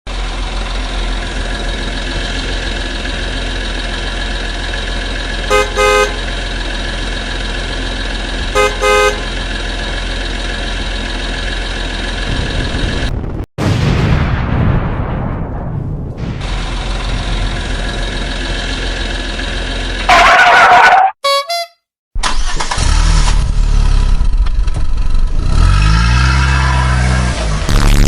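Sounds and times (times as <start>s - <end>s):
vehicle engine running: 0.1s - 13.4s, 16.3s - 21.1s, 22.2s - 26.2s
horn honking: 5.4s - 6.4s, 8.4s - 9.5s, 20.0s - 22.6s.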